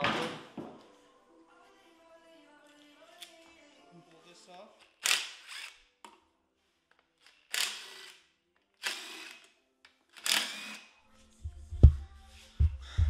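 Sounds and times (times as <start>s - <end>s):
impact wrench bursts: 7.5s - 8.2s, 8.8s - 9.4s, 10.2s - 10.8s.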